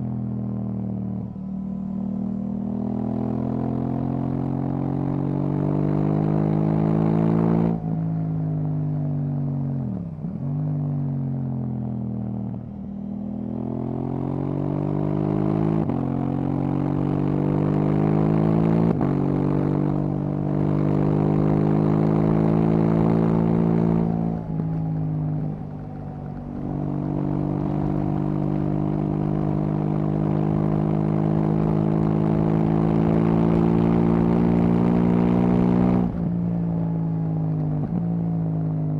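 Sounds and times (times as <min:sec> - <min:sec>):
motorcycle engine revving: 0:13.1 - 0:38.9
wind noise: 0:24.1 - 0:32.1.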